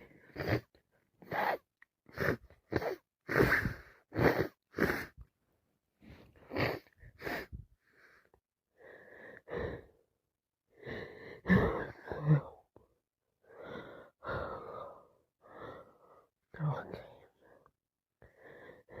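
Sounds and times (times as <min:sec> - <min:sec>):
woman sniffing: 0:00.4 - 0:05.2
gasping wheezy breaths: 0:10.7 - 0:12.7, 0:13.4 - 0:16.3, 0:17.4 - 0:19.0.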